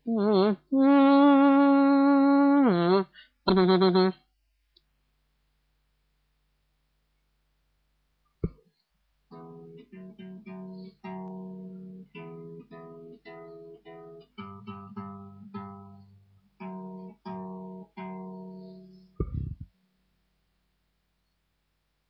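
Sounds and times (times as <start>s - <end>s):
guitar chords: 9.3s - 19.9s.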